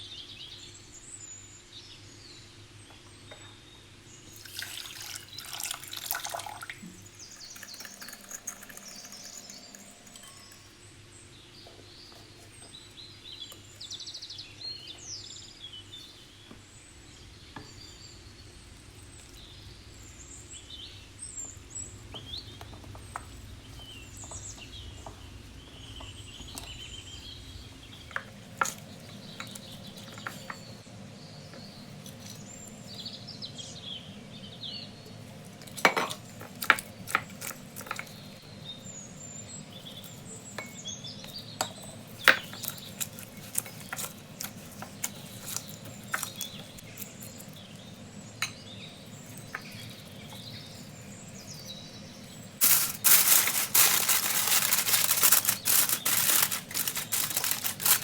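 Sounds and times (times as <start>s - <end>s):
birds chirping: 0.0s - 58.0s
utensils clinking against dishes: 7.2s - 10.8s, 35.5s - 38.5s, 39.8s - 51.5s, 52.3s - 58.0s.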